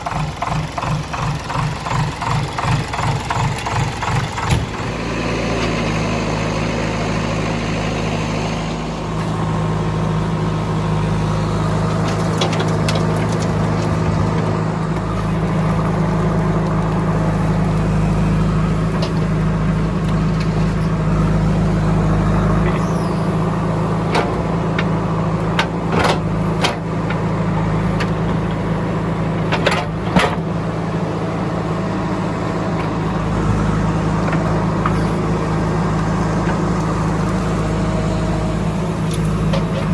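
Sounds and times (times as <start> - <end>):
heavy diesel machinery running: 0.0 - 39.9.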